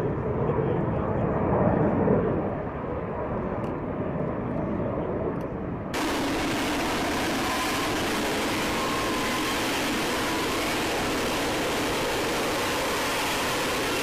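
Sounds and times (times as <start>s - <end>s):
aircraft engine rumble: 0.0s - 14.0s
rushing noise with faint whine: 6.0s - 14.0s.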